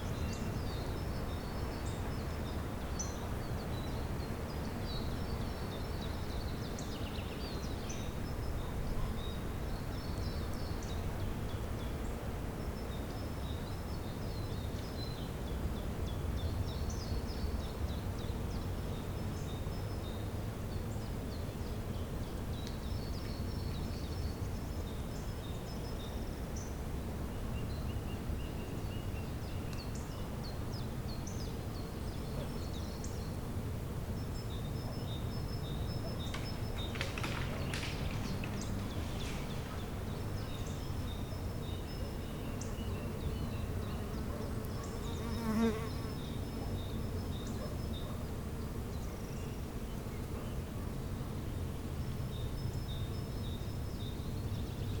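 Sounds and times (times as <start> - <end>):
small birds chirping: 34.2 - 50.7.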